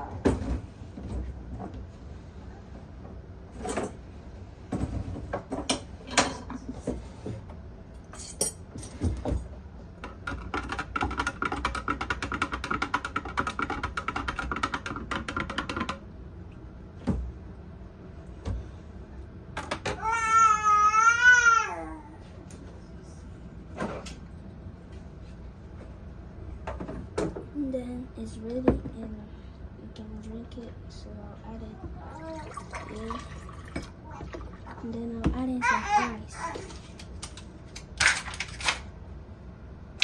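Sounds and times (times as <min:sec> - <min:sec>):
kitchenware clinking: 0:08.1 - 0:09.0.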